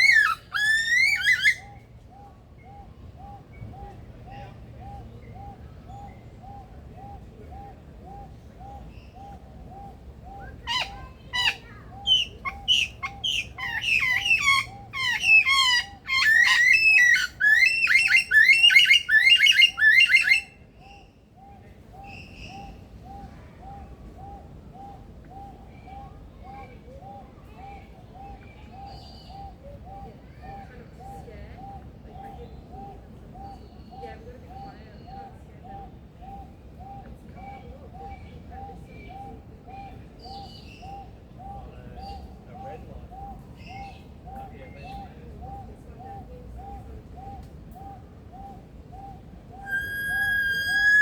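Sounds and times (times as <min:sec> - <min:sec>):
lyrebird singing mimicked calls: 0:00.0 - 0:01.8, 0:04.8 - 0:20.5, 0:46.6 - 0:51.0.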